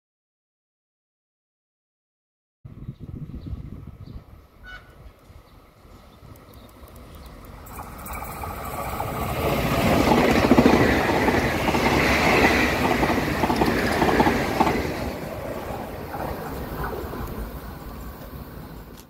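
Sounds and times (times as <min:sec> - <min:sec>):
train wheels rumbling on rails: 0:04.6 - 0:19.0.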